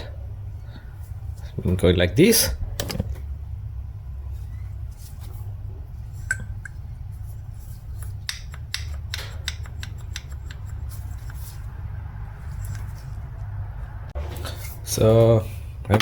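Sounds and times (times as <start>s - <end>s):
steady low hum: 0.0s - 16.0s
metal engine parts clicking: 7.9s - 11.6s.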